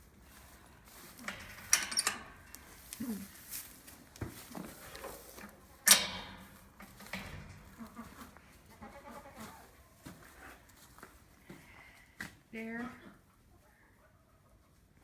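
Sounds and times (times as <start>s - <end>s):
goats rustling: 0.0s - 12.4s
knocks in barn pen: 1.0s - 10.2s.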